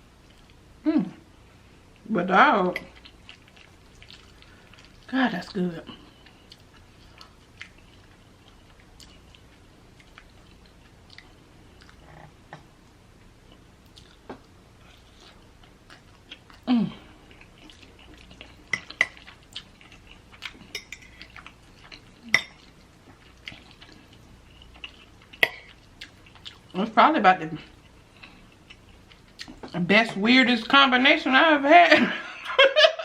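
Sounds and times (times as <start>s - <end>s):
soft chewing: 0.2s - 0.6s, 2.7s - 26.8s, 27.5s - 30.2s.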